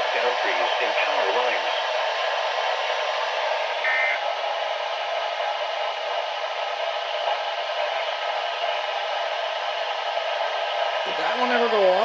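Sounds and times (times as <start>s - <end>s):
radio static hiss: 0.0s - 4.4s, 7.2s - 9.2s.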